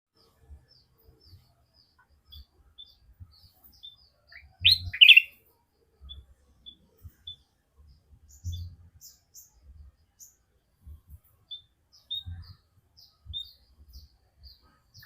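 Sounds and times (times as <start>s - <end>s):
bird chirping: 0.2s - 15.0s
loud two-part bird call: 4.6s - 5.4s.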